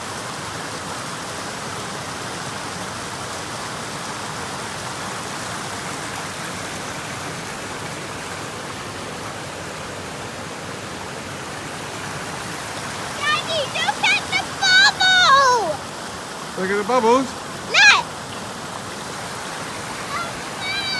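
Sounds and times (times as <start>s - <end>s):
waterfall rushing: 4.2s - 20.9s.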